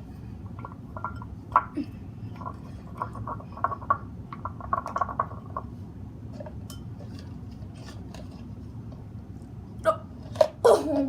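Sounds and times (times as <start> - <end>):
stirrer clinking against bowl: 0.5 - 5.7.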